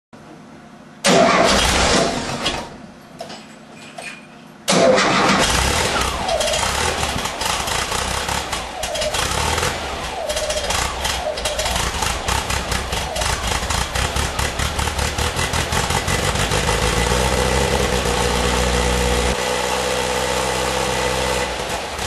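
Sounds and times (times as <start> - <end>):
car engine starting: 1.0 - 2.8, 4.7 - 22.0
engine idling roughly: 4.8 - 22.0.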